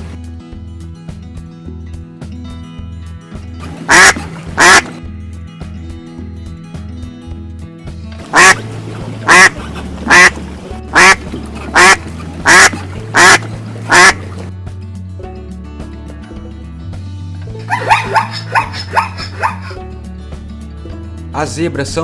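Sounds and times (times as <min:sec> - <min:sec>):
background music with steady beat: 0:00.0 - 0:22.0
duck quacking: 0:03.6 - 0:05.0, 0:08.3 - 0:14.5, 0:17.6 - 0:19.8.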